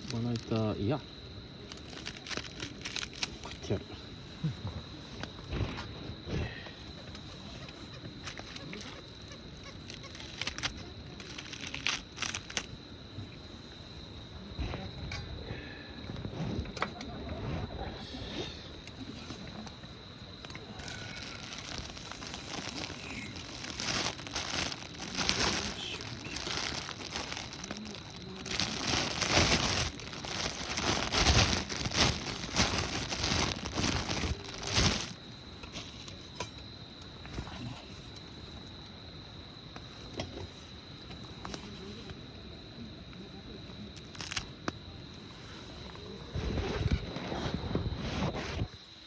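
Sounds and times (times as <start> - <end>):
crinkling and rustling: 0.0 - 1.0, 1.6 - 3.8, 7.0 - 12.8, 20.4 - 36.5, 44.0 - 44.8.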